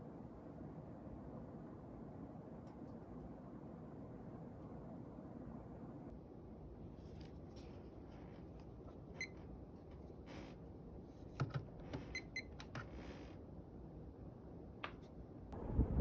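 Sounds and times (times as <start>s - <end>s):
ceiling fan air rush: 12.9s - 16.0s.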